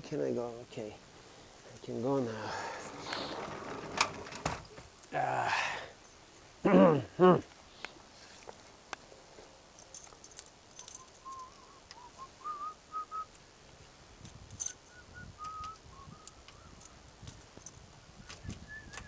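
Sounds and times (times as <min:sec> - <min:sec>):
short whistled notes: 0:11.0 - 0:13.3, 0:18.4 - 0:19.0.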